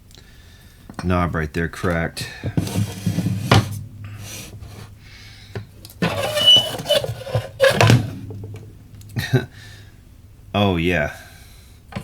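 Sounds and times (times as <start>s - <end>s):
steady low hum: 0.0s - 12.0s
scraping and rustling: 1.8s - 9.9s.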